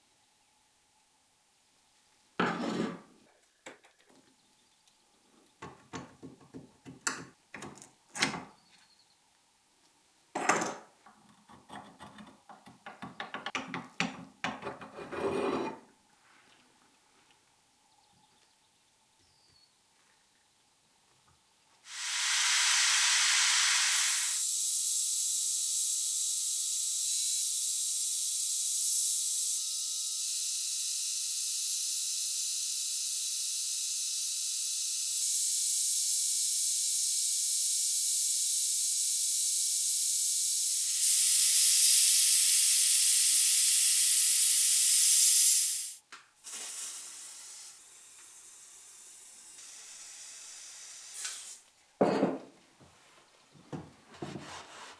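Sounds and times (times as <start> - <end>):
sandblaster hissing: 21.9 - 51.6.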